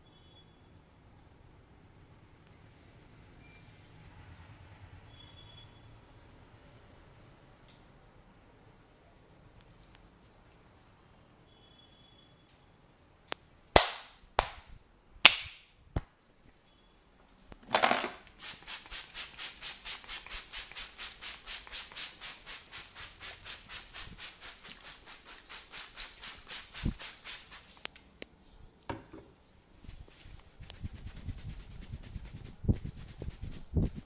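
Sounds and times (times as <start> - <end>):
hands smacking body: 13.8 - 14.7.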